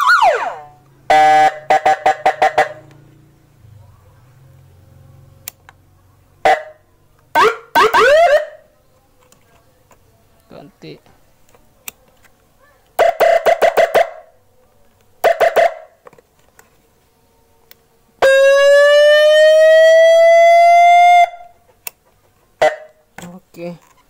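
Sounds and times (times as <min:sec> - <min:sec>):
electronic siren beeps and wail: 0:00.0 - 0:02.9, 0:06.5 - 0:08.6, 0:13.0 - 0:14.2, 0:18.2 - 0:21.5.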